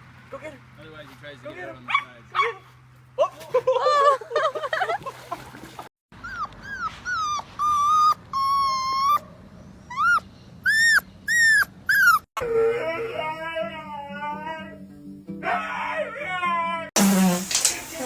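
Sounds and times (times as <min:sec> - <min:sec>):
dog whining: 0:06.2 - 0:13.3
person saying oh: 0:12.4 - 0:14.8.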